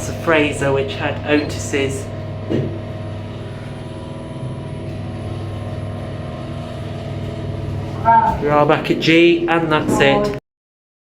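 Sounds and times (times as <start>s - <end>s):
lift mechanical hum: 0.0s - 10.4s
ventilation fan running: 0.0s - 10.4s.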